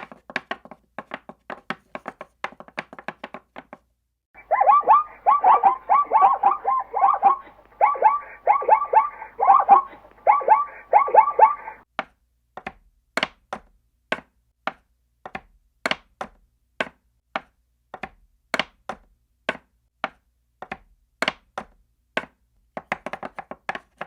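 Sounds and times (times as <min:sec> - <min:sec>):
short calls falling in pitch: 0:04.4 - 0:11.8.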